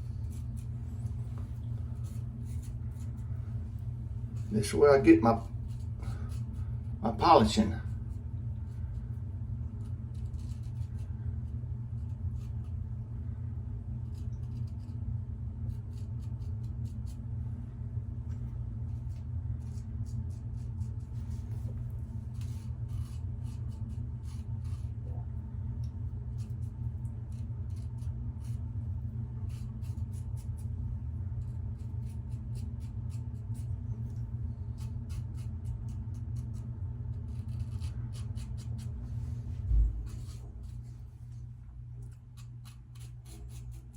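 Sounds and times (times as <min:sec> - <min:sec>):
razor scraping stubble: 0:00.0 - 0:08.1, 0:09.8 - 0:11.1, 0:18.3 - 0:25.1, 0:31.4 - 0:41.4, 0:42.0 - 0:43.9
low hum: 0:00.0 - 0:43.9.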